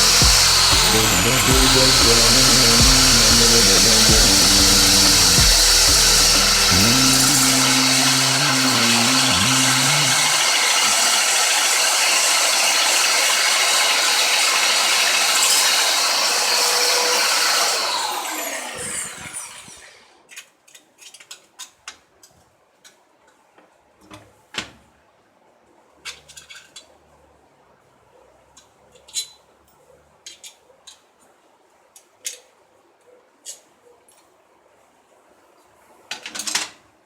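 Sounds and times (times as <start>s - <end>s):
power tool whining and spinning down: 0.0s - 20.2s.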